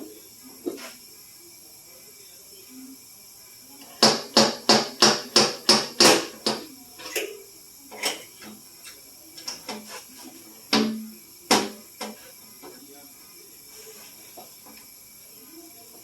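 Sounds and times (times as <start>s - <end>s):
hammer tapping sheet metal: 4.0s - 6.7s.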